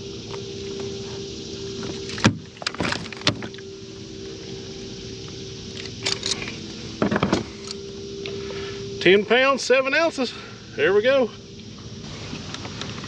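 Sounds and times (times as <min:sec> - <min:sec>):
steady hum: 0:00.0 - 0:13.0
knocks and clatters in kayak: 0:01.9 - 0:03.6.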